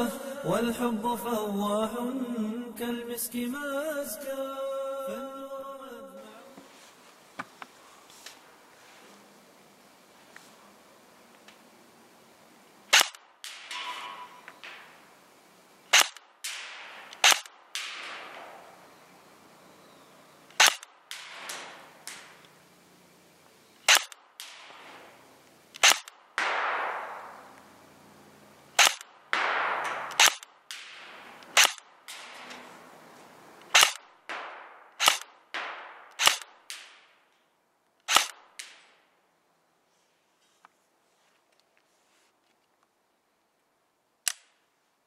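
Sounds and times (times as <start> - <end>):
airsoft gun shots with echo: 12.9 - 15.0, 15.9 - 19.0, 20.5 - 22.4, 23.8 - 25.2, 25.8 - 27.8, 28.7 - 32.8, 33.7 - 37.2, 38.1 - 39.0.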